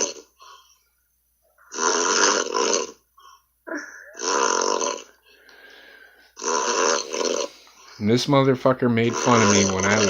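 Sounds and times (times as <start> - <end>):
man snoring heavily: 0.0 - 0.4, 1.7 - 3.0, 4.2 - 5.2, 6.4 - 7.6, 9.0 - 10.0
faint breath: 5.2 - 6.4.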